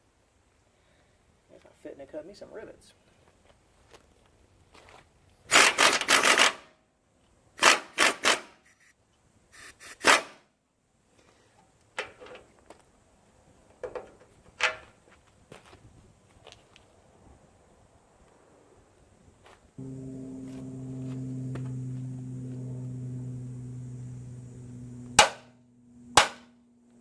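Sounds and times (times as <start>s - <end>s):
power tool cutting metal: 19.8s - 26.5s.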